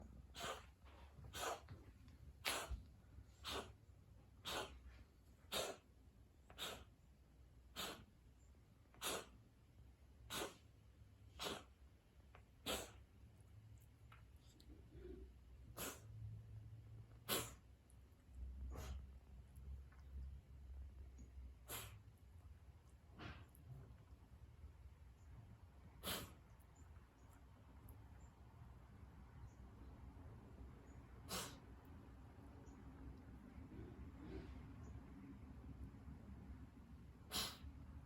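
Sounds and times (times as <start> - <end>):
animal coughing: 0.2 - 7.0, 7.6 - 8.2, 8.9 - 9.4, 10.2 - 11.8, 12.4 - 13.1, 14.7 - 16.1, 17.1 - 17.8, 18.6 - 19.1, 21.5 - 22.1, 23.1 - 23.6, 26.0 - 26.6, 31.2 - 31.8, 37.2 - 37.8.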